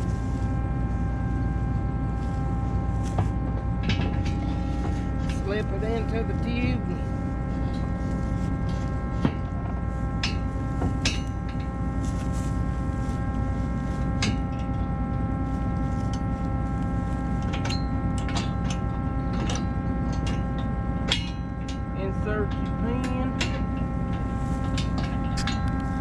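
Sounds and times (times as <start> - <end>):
constant whine: 0.0 - 26.0
farm machine engine running: 0.0 - 26.0.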